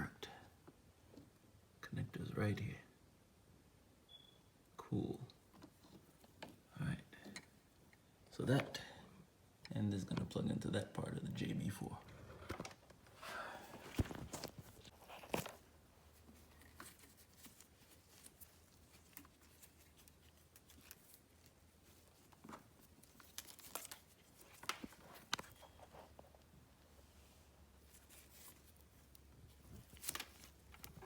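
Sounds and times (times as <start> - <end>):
cable handling rustles and clicks: 12.5 - 26.5, 27.8 - 31.0.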